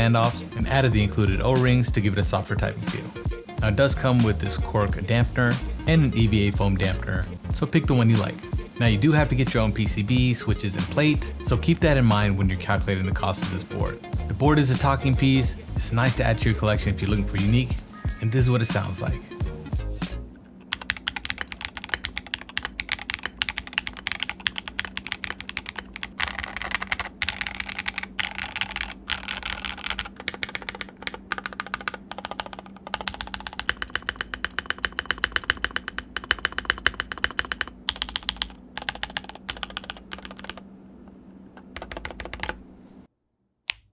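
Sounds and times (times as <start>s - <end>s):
fast mechanical keyboard typing: 20.7s - 40.6s, 41.6s - 42.6s.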